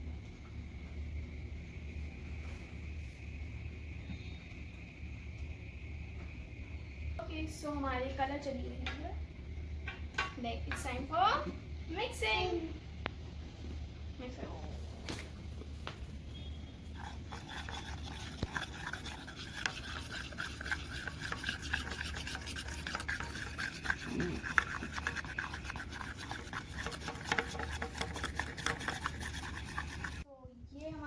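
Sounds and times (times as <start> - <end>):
stirrer scraping a container: 16.9 - 30.3.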